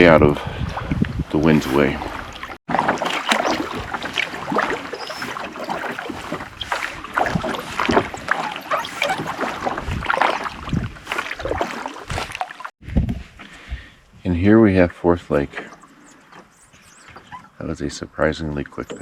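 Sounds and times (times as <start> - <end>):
paddle pulling through water: 0.0 - 12.8, 15.6 - 17.6
water splashing and dripping: 0.6 - 12.8.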